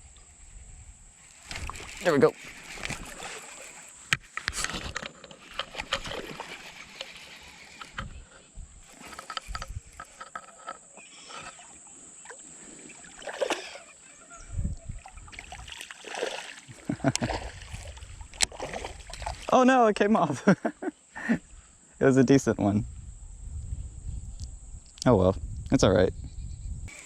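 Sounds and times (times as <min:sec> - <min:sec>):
water splashing and lapping: 0:01.2 - 0:19.6
fishing gear clicks and knocks: 0:01.4 - 0:11.6.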